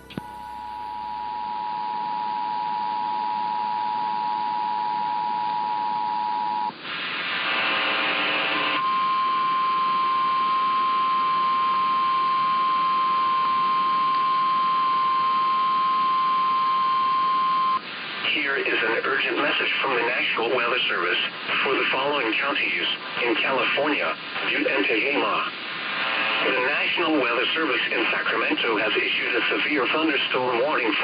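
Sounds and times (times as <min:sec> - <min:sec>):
radio hiss: 0:06.6 - 0:10.4, 0:13.5 - 0:31.0.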